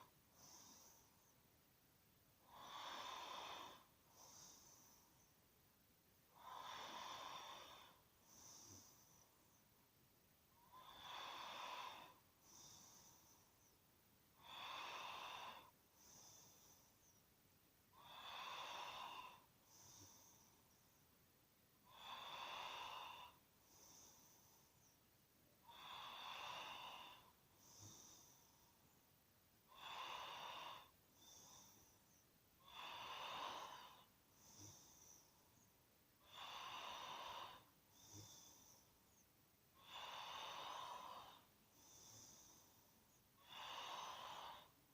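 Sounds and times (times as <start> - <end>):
person snoring: 2.4 - 5.1, 6.4 - 9.2, 10.6 - 13.7, 14.4 - 17.2, 18.0 - 20.5, 29.7 - 35.3, 36.2 - 39.2, 39.8 - 42.8, 43.4 - 44.8.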